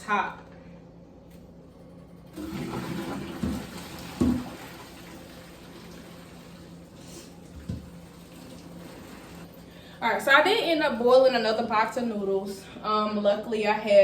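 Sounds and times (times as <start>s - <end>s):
water pouring into sink: 2.4s - 9.7s.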